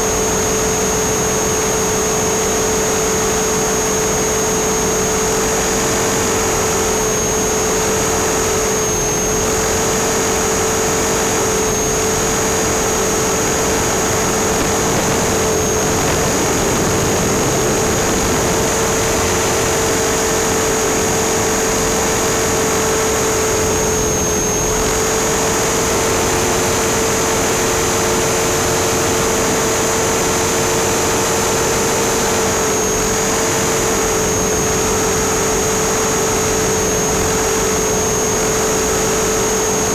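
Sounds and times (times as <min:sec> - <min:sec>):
rc helicopter rotor whine: 0:00.0 - 0:39.9
rushing wind noise: 0:13.0 - 0:21.5.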